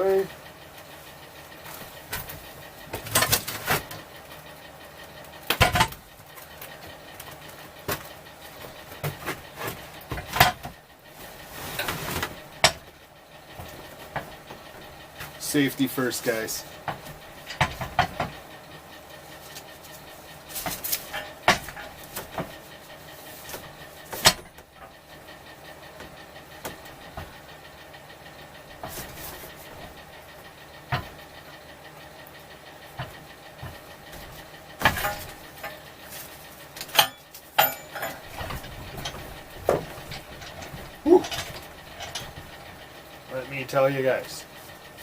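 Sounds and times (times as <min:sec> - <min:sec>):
steady low hum: 0:00.0 - 0:45.0
metallic knocks and clanks: 0:05.4 - 0:06.1, 0:07.9 - 0:10.8, 0:11.7 - 0:14.9, 0:16.8 - 0:18.4, 0:20.6 - 0:22.6, 0:23.5 - 0:25.0, 0:30.9 - 0:31.2, 0:33.0 - 0:35.9, 0:36.8 - 0:42.8.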